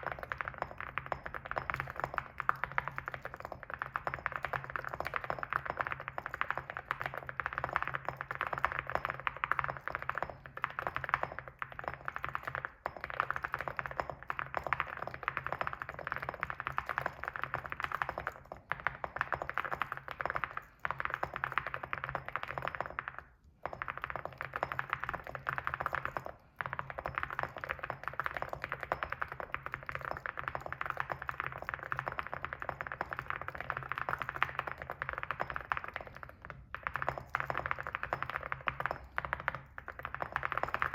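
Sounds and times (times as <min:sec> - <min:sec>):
mechanical keyboard typing: 0:00.0 - 0:23.2, 0:23.8 - 0:40.9.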